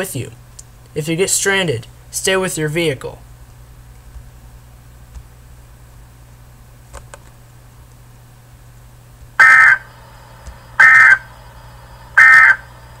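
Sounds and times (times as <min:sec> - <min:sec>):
faint steady hum: 0:00.0 - 0:13.0
digital data tone bursts: 0:09.4 - 0:09.9, 0:10.7 - 0:11.3, 0:12.2 - 0:12.7.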